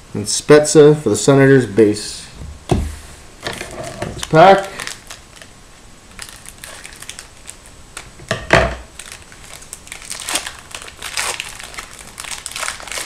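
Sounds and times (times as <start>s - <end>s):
wrapper crinkling: 3.5s - 8.2s, 8.9s - 13.0s
wrapper tearing: 3.5s - 8.2s, 8.9s - 13.0s.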